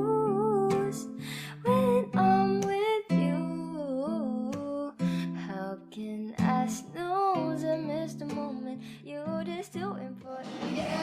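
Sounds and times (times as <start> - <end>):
person singing: 0.0 - 5.0, 10.2 - 11.0
plucked acoustic guitar: 0.0 - 11.0.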